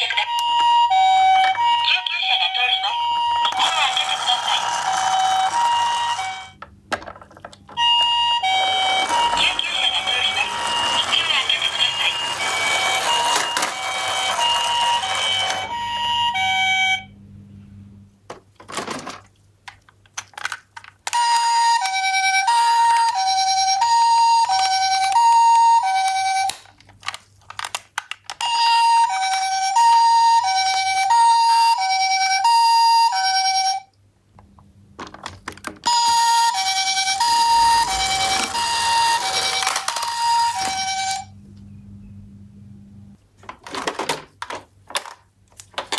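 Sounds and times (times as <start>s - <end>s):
toy two-tone siren: 0.0s - 6.6s, 7.8s - 17.1s, 21.1s - 26.6s, 28.4s - 33.9s, 35.9s - 41.3s.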